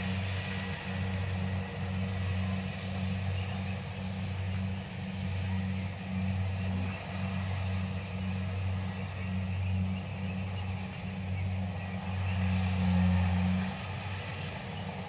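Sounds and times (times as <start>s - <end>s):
diesel engine droning: 0.0s - 15.0s
working machinery noise: 0.0s - 15.0s.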